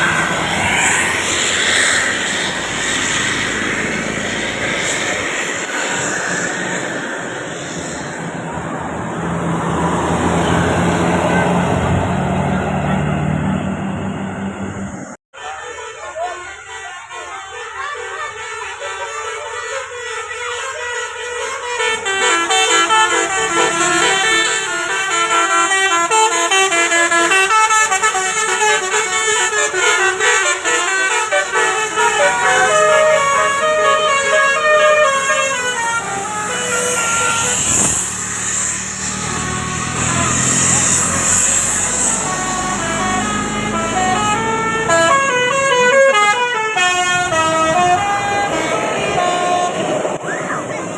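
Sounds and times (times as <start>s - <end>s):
low rumble of traffic: 0.0s - 15.2s, 18.2s - 50.9s
bus musical horn tune: 10.3s - 13.2s, 15.4s - 50.2s.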